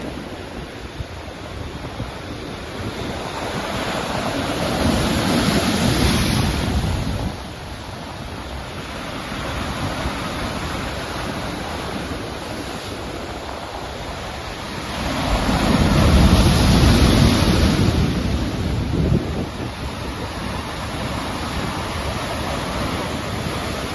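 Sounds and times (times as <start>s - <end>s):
sea waves washing onto shore: 0.0s - 23.9s.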